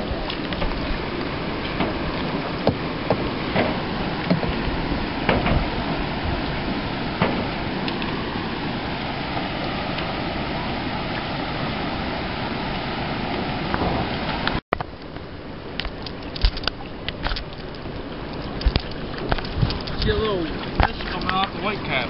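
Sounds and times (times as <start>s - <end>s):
rushing rough water: 0.0s - 22.0s
sharp knocks or splashes: 1.6s - 8.4s, 15.8s - 17.8s, 18.4s - 22.0s.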